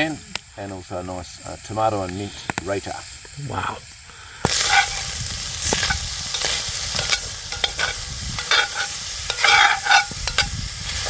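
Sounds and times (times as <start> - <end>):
meat sizzling in a frying pan: 0.0 - 11.0
utensil scraping a pan: 4.5 - 11.0.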